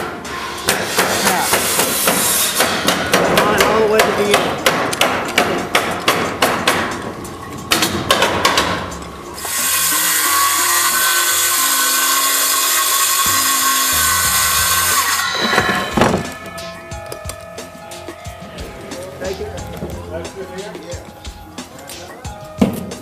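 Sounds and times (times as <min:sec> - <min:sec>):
sharp knocks: 0:00.7 - 0:07.1, 0:07.7 - 0:09.0
power tool running: 0:09.4 - 0:17.1.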